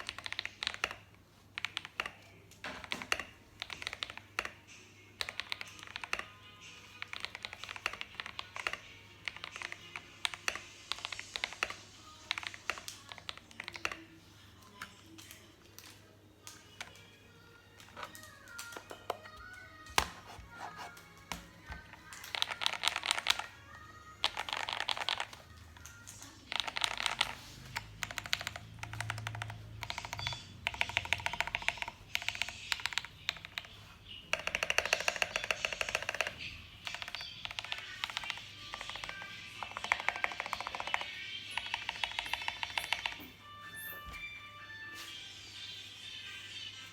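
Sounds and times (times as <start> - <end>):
mechanical keyboard typing: 0.0 - 4.6, 5.2 - 14.0, 21.7 - 23.6, 24.2 - 43.3
background music: 0.0 - 46.9.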